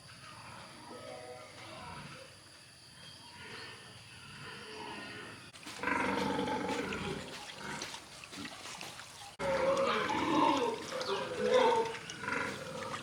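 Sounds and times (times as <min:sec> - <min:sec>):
pigs grunting and calling: 0:03.3 - 0:13.0.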